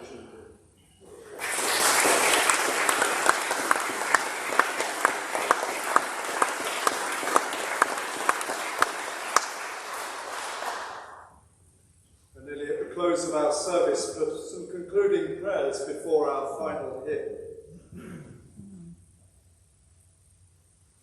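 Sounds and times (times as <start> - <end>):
congregation applauding: 1.0 - 11.2
close hand claps: 1.1 - 11.2.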